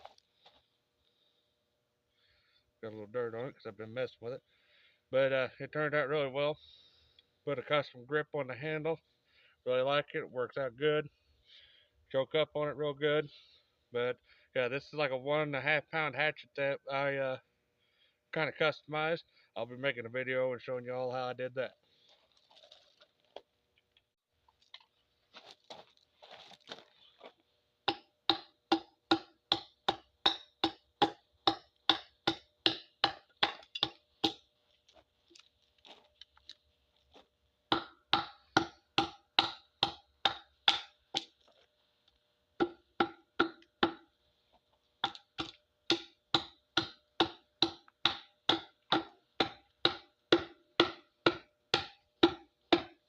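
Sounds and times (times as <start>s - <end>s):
hatchet chopping log: 27.9s - 34.4s, 37.7s - 41.3s, 42.6s - 44.1s, 45.0s - 53.0s.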